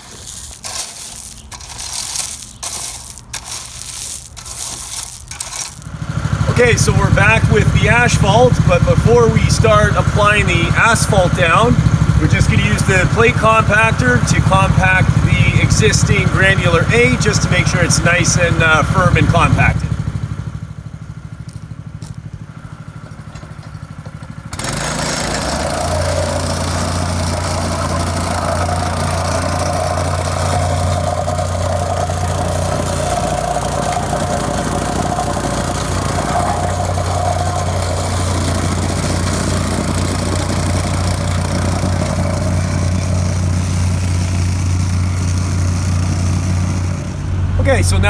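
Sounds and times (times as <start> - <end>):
vibrating plate compacting gravel: 0.0 - 47.2
plate compactor engine: 0.0 - 48.0.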